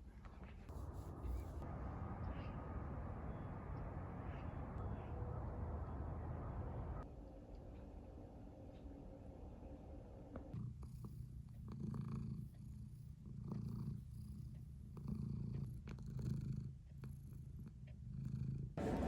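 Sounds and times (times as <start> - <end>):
pulsing low rumble: 0.7 - 11.7.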